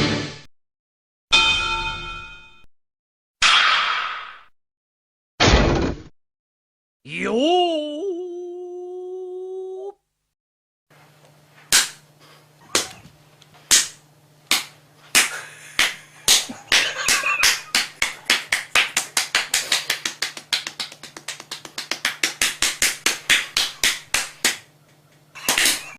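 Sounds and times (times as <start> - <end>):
hand slapping bare belly: 11.7 - 12.0, 12.7 - 13.0, 13.7 - 24.7.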